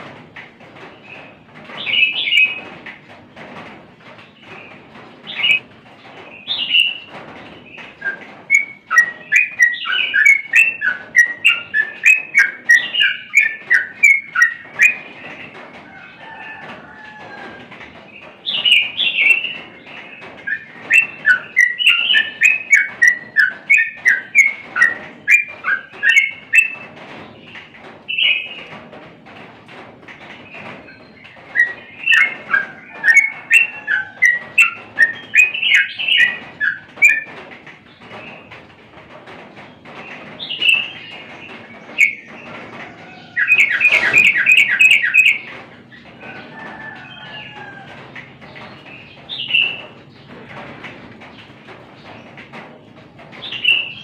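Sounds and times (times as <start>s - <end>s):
bird chattering song: 1.0s - 2.7s, 4.4s - 5.7s, 6.3s - 15.6s, 18.1s - 28.7s, 30.5s - 38.6s, 39.7s - 47.5s, 48.4s - 50.6s, 53.4s - 54.0s.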